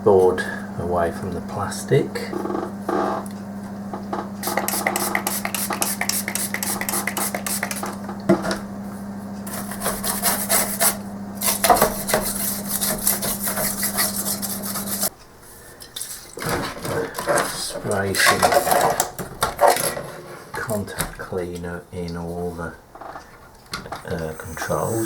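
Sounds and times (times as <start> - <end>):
steady low hum: 0.0 - 15.9, 23.5 - 25.0
rubbing and scraping on circuit board: 4.4 - 7.9, 9.5 - 15.1.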